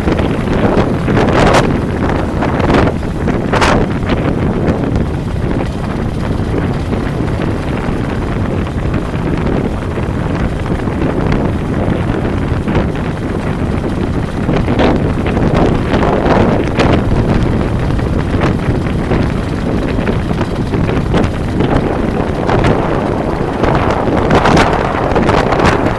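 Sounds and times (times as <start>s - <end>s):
road and vehicle noise: 0.0s - 25.9s
wind buffeting microphone: 0.0s - 25.9s.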